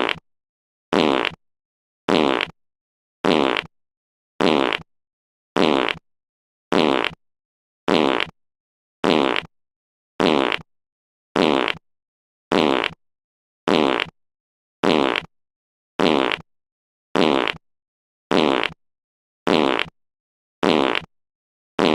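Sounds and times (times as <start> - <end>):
fart sound: 0.0 - 0.2, 0.9 - 1.4, 2.1 - 2.6, 3.2 - 3.7, 4.4 - 4.9, 5.6 - 6.0, 6.7 - 7.2, 7.9 - 8.4, 9.0 - 9.5, 10.2 - 10.7, 11.4 - 11.8, 12.5 - 13.0, 13.7 - 14.2, 14.8 - 15.3, 16.0 - 16.5, 17.2 - 17.6, 18.3 - 18.8, 19.5 - 20.0, 20.6 - 21.1.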